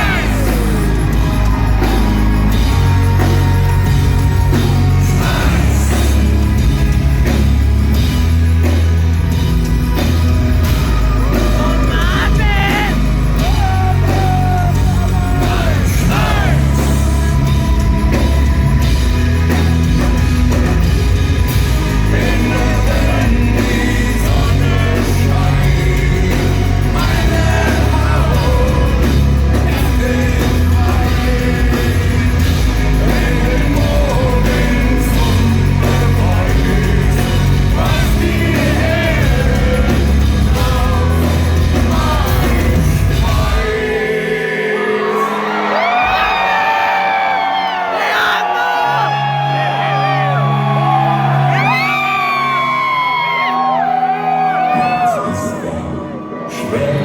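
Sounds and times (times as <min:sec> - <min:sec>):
man singing and shouting: 0:00.0 - 0:00.9, 0:11.2 - 0:18.5
industrial metal band playing: 0:00.0 - 0:46.6.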